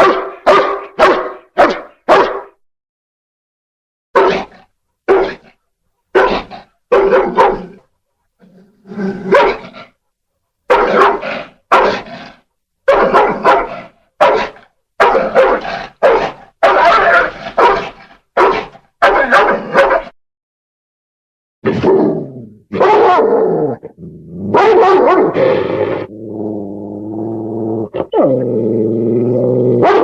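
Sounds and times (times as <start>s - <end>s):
dog barking: 0.0s - 2.6s, 4.2s - 7.8s, 9.2s - 9.9s, 10.7s - 12.2s, 12.8s - 20.2s, 22.7s - 23.3s, 24.5s - 25.7s, 29.8s - 30.0s
dog growling: 21.8s - 30.0s.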